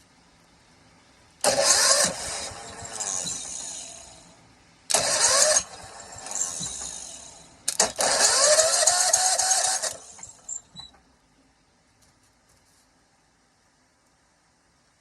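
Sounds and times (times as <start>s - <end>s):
engine cranking with rising whine: 1.4s - 10.7s.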